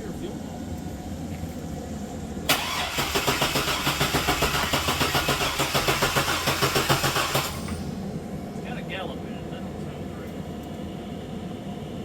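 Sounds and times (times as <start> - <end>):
engine starter cranking: 2.5 - 7.9.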